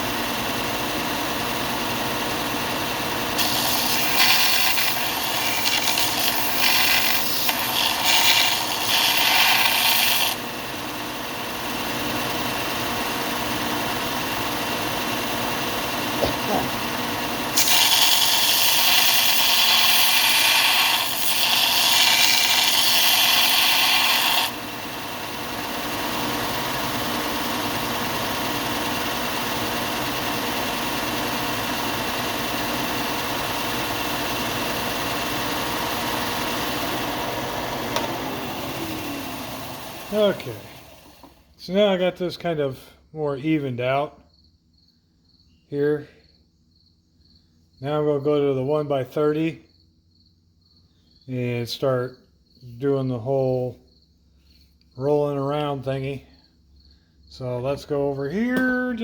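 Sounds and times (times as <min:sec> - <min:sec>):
belt sander running: 0:00.0 - 0:41.6
handle sanding on belt: 0:03.4 - 0:10.4, 0:17.6 - 0:24.5.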